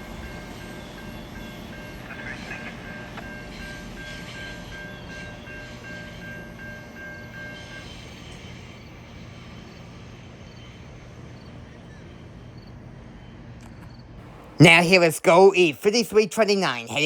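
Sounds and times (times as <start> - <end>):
crossing warning bell dinging: 0.0 - 9.6
train rumbling past: 0.0 - 17.0.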